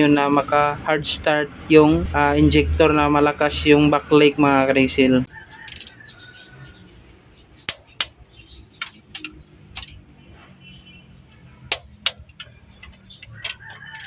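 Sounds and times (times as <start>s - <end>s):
metallic clicks of hand tools: 5.7s - 6.0s, 8.8s - 10.0s, 11.7s - 14.0s.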